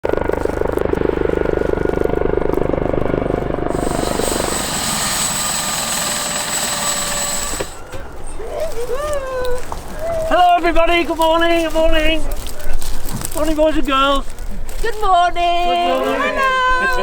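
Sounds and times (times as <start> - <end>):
helicopter rotor blades chopping: 0.1 - 8.2
turbine whine and hiss: 3.7 - 8.1.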